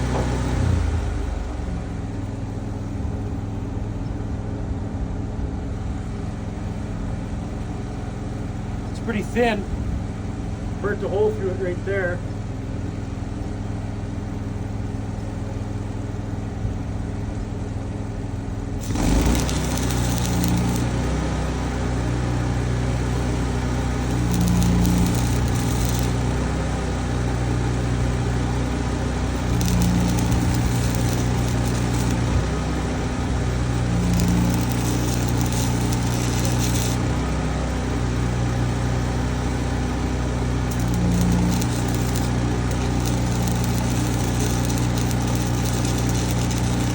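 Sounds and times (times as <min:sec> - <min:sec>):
engine running: 0:00.0 - 0:46.9
welding arc crackling hiss: 0:18.8 - 0:38.9, 0:39.5 - 0:46.9.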